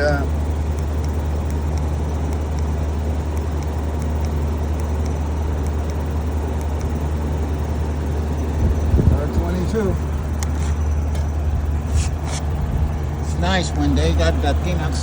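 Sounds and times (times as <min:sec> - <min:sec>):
air conditioner unit humming: 0:00.0 - 0:15.0.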